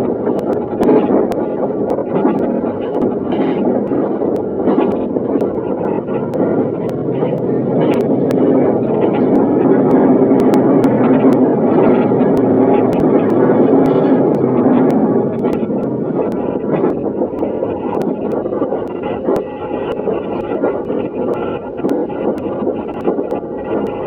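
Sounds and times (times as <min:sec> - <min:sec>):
train rumbling: 0:00.1 - 0:18.4.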